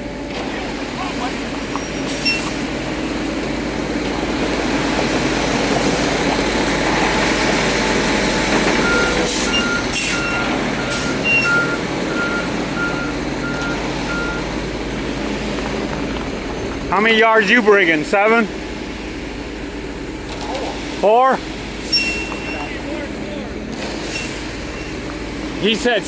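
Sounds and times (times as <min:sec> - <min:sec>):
backup alarm beeps: 0:00.0 - 0:02.8, 0:08.8 - 0:14.7, 0:21.8 - 0:23.2
concrete truck engine running: 0:00.0 - 0:26.0
air hiss bursts: 0:09.2 - 0:11.8, 0:21.8 - 0:22.7, 0:23.8 - 0:24.9.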